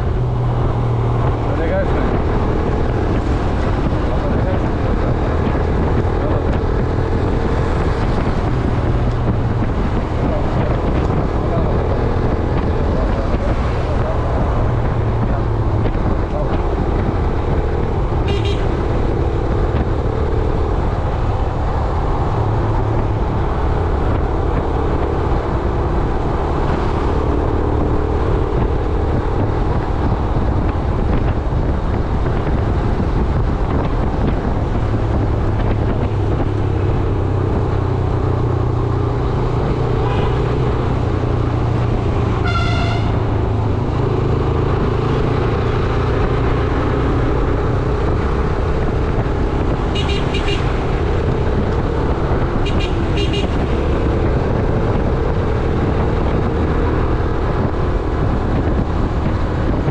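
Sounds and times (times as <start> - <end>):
road traffic: 0.0 - 59.9
vehicle horn tooting: 18.2 - 18.7, 40.0 - 40.4, 42.4 - 43.2, 49.9 - 50.7, 52.6 - 53.6.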